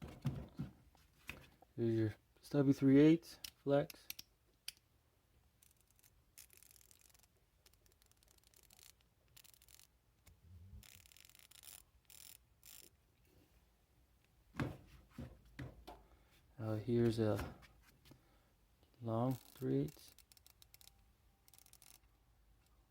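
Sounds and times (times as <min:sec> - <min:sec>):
tools rubbing and scraping: 0:19.1 - 0:22.1.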